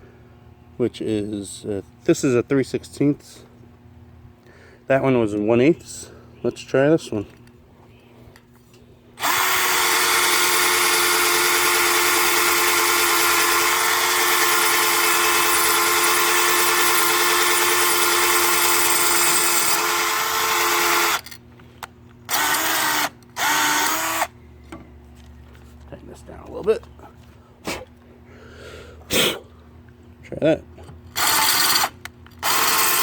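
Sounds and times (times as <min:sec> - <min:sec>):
power drill grinding into tile: 0:09.2 - 0:21.4, 0:22.3 - 0:24.3, 0:31.2 - 0:33.0.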